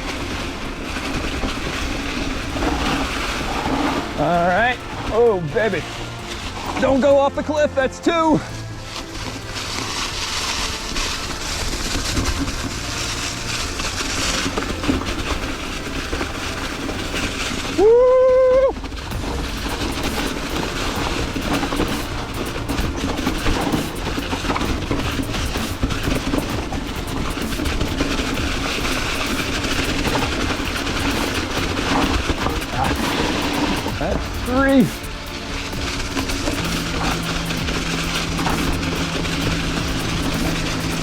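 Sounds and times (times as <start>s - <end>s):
tyres rolling over leaves and rock: 0.0s - 41.0s
bike rattling clicks and knocks: 18.8s - 41.0s.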